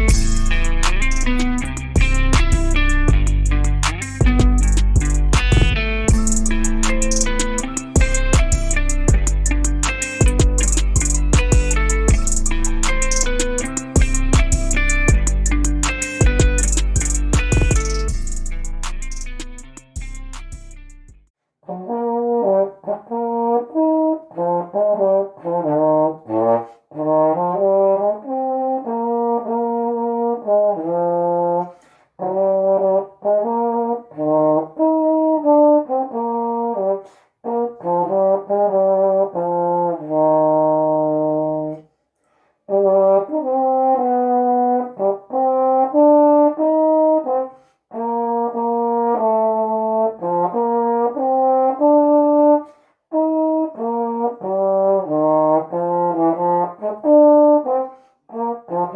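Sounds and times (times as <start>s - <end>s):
trombone playing hymn melody: 21.7s - 41.8s, 42.7s - 58.9s.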